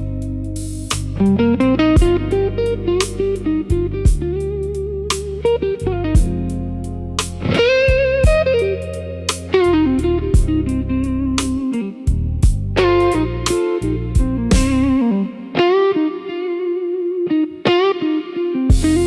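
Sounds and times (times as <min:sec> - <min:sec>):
steady drum beat: 0:00.0 - 0:05.5, 0:06.1 - 0:06.6, 0:07.2 - 0:10.8, 0:11.4 - 0:15.1, 0:18.7 - 0:19.0
sustained bass notes: 0:00.0 - 0:15.2
electric guitar lead: 0:00.0 - 0:19.0.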